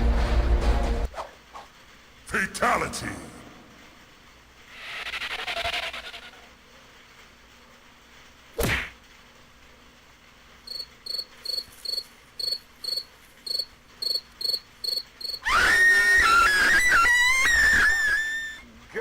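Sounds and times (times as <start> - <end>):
cricket chirps: 10.6 - 15.5
burst of noise: 15.4 - 18.7.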